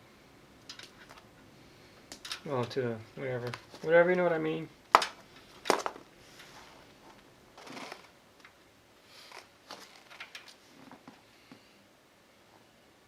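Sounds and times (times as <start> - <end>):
cables rustling: 4.9 - 8.6, 9.2 - 11.3.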